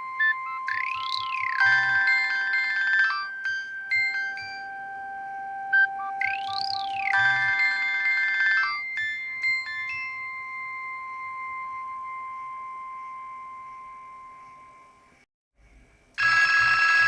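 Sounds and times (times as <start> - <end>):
electronic phone ringtone: 0.0 - 11.4, 16.2 - 17.0.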